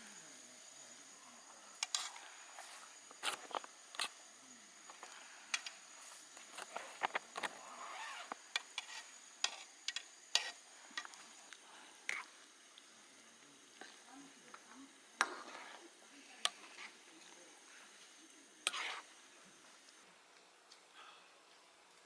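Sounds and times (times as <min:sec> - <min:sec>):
utensils clicking against dishes: 0:18.6 - 0:19.0.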